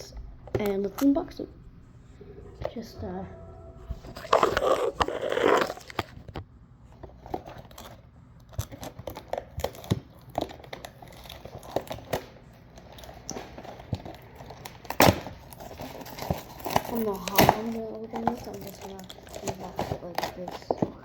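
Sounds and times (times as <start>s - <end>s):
packaging crinkling: 4.1s - 6.3s, 7.2s - 21.0s.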